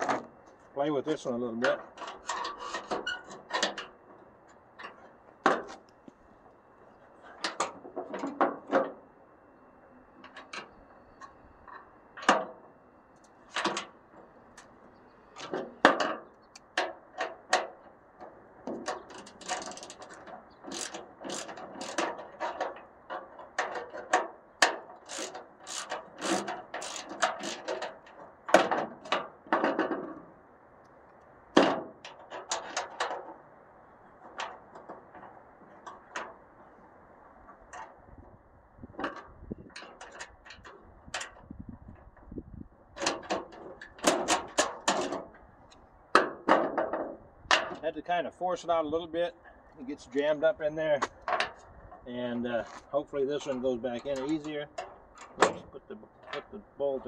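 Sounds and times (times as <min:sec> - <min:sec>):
metal cable clicking and rattling: 0:15.4 - 0:30.0.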